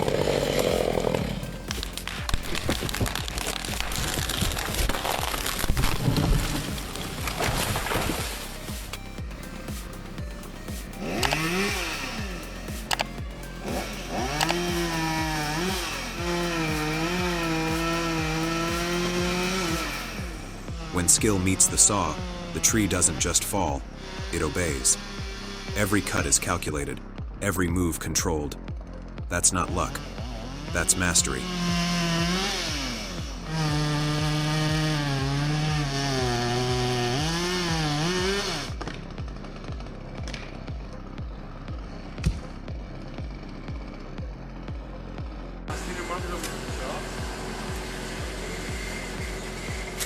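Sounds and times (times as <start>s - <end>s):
chainsaw engine revving: 0.0s - 50.0s.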